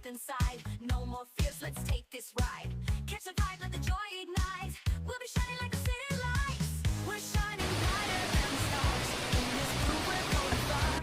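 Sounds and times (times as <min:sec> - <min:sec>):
dance-pop music: 0:00.0 - 0:11.0
steady rushing noise: 0:07.6 - 0:11.0.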